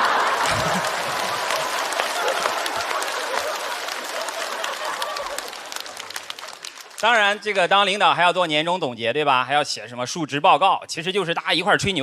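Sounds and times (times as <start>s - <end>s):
audience laughing: 0.0s - 6.1s
studio audience applauding: 0.0s - 8.0s.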